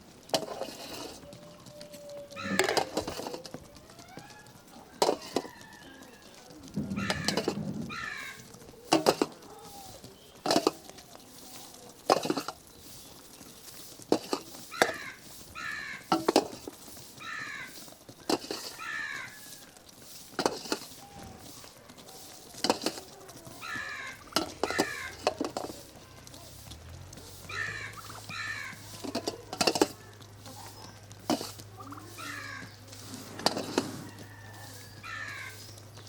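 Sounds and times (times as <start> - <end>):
crows cawing: 2.3 - 3.0, 6.8 - 8.7, 14.7 - 16.2, 17.2 - 19.7, 23.5 - 25.4, 27.4 - 29.1, 32.1 - 32.8, 35.0 - 35.7
sharp clatters: 6.6 - 11.0, 11.6 - 36.0.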